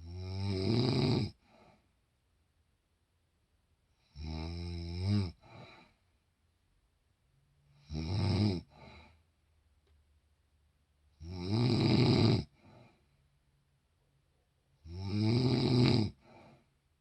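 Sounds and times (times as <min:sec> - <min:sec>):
woman snoring: 0:00.0 - 0:01.7, 0:04.0 - 0:05.9, 0:07.7 - 0:09.2, 0:11.2 - 0:12.9, 0:14.8 - 0:16.6
soft breath: 0:01.4 - 0:02.0, 0:05.4 - 0:06.2, 0:08.6 - 0:09.4, 0:12.5 - 0:13.4, 0:16.2 - 0:16.9.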